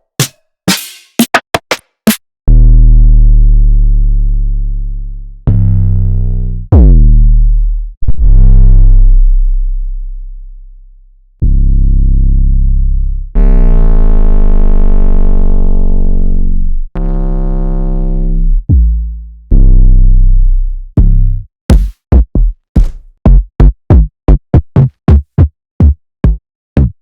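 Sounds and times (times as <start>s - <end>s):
distorted bass notes: 2.5s - 10.7s, 11.4s - 27.0s.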